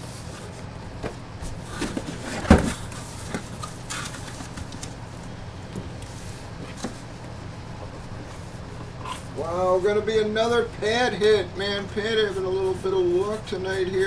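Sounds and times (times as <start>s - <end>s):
cardboard and plastic rustle: 0.0s - 9.4s
low steady hum: 0.0s - 14.0s
knocks and clicks of packaging: 1.0s - 5.0s, 5.7s - 8.0s.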